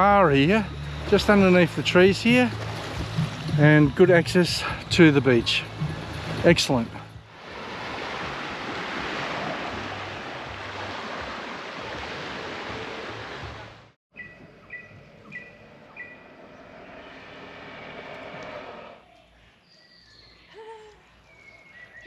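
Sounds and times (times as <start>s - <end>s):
outdoor ambience: 0.0s - 22.0s
waves breaking on a beach: 0.6s - 14.0s.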